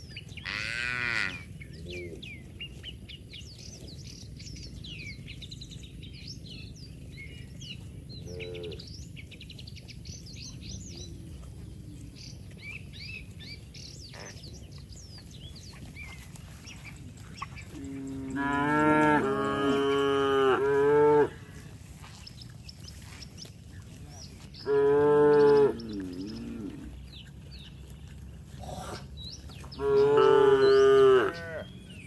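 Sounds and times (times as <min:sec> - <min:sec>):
cows mooing: 0:00.3 - 0:02.2, 0:08.2 - 0:09.0, 0:17.0 - 0:21.8, 0:24.1 - 0:27.6, 0:28.4 - 0:31.9.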